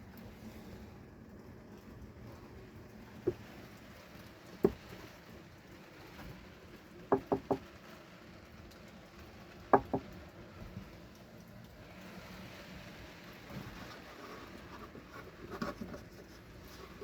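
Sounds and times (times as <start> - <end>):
knuckle knocks on hollow wood: 7.1 - 7.6, 9.7 - 10.0.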